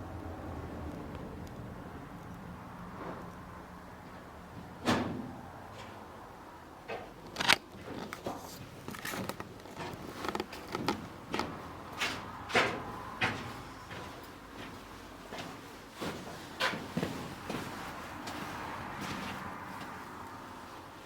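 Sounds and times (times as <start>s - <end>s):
footsteps walking: 7.0s - 21.0s.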